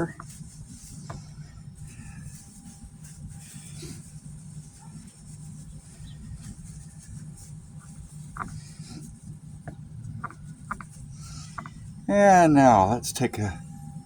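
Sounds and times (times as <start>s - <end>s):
steady low hum: 0.0s - 14.0s
light clicks and taps: 8.3s - 11.8s.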